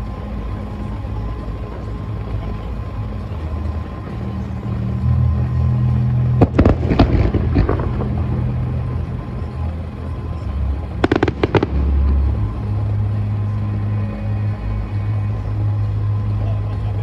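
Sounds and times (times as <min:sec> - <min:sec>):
firework bang and crackle: 0:06.4 - 0:10.2, 0:10.9 - 0:13.0
rapid volley of sharp cracks: 0:06.4 - 0:13.9.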